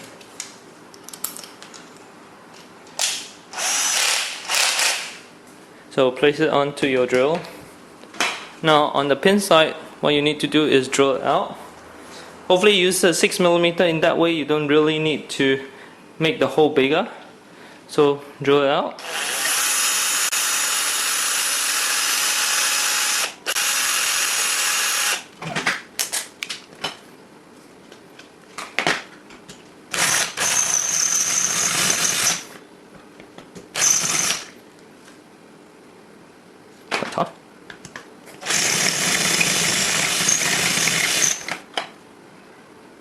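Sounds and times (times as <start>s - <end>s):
power drill drilling: 3.6s - 5.2s, 19.0s - 25.3s, 29.9s - 32.4s, 33.8s - 34.5s, 38.4s - 41.6s.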